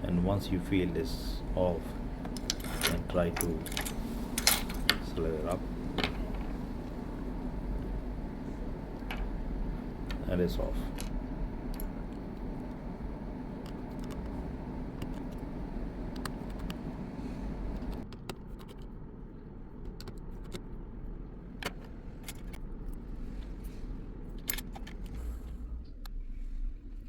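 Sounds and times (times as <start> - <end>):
low background rumble: 0.0 - 27.0.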